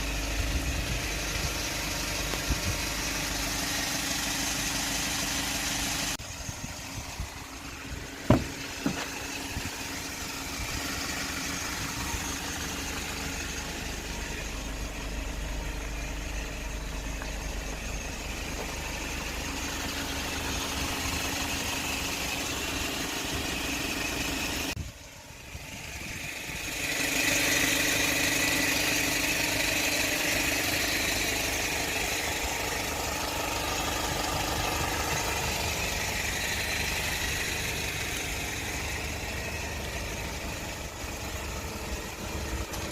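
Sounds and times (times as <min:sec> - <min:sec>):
truck engine idling: 0:00.0 - 0:42.9
sharp engine knock: 0:08.2 - 0:09.4.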